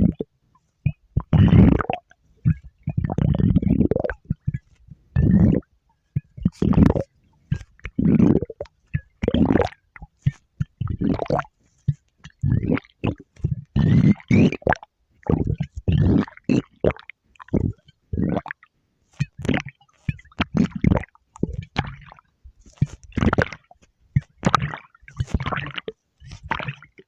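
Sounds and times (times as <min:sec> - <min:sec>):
stomach growling: 0:00.0 - 0:27.0.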